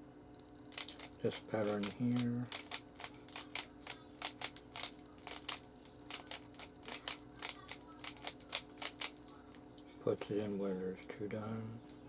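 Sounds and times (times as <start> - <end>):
puzzle cube twisting clicks: 0.7 - 9.2.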